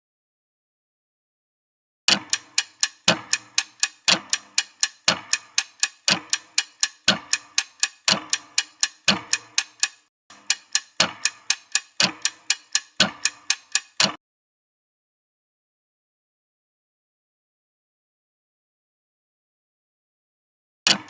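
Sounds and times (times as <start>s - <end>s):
clock-like ticking: 2.1s - 14.2s.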